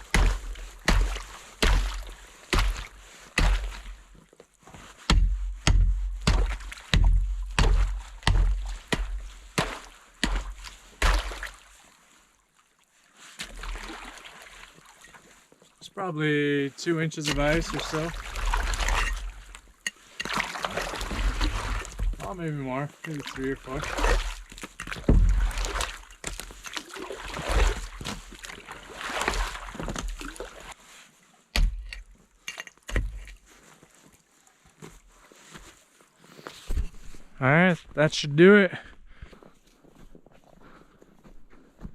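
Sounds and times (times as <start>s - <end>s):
water splashing and sloshing: 0.0s - 37.4s
hard strikes chopping ice: 0.1s - 3.8s, 5.1s - 11.5s, 17.2s - 19.2s, 31.6s - 32.0s.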